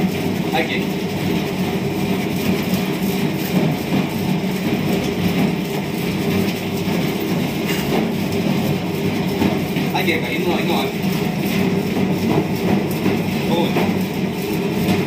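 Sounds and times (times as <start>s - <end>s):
washing machine churning water: 0.0s - 15.0s.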